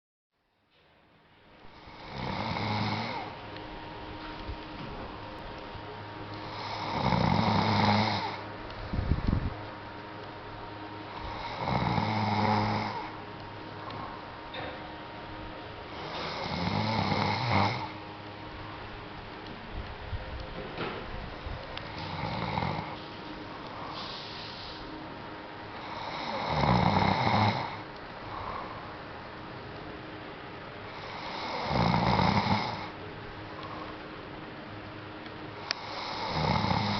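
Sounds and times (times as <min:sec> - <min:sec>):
person snoring: 0:01.7 - 0:03.4, 0:06.4 - 0:08.4, 0:11.1 - 0:13.2, 0:15.9 - 0:18.0, 0:21.9 - 0:23.0, 0:25.7 - 0:28.9, 0:30.9 - 0:33.0, 0:35.7 - 0:36.9
soft breath: 0:22.9 - 0:25.0, 0:28.2 - 0:29.0.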